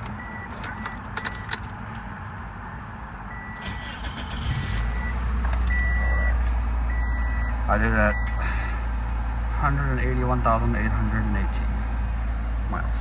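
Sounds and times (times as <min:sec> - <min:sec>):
dashboard warning chime beeping: 0:00.0 - 0:01.7, 0:03.3 - 0:08.6
key clicks: 0:00.0 - 0:01.8, 0:05.0 - 0:06.0
car engine cranking and idling: 0:00.0 - 0:02.2, 0:03.3 - 0:13.0.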